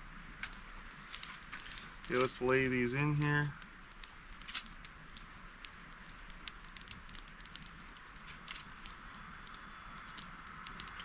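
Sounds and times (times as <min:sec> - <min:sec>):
campfire crackling and popping: 0:00.0 - 0:11.0
faint steady hiss: 0:00.0 - 0:11.0.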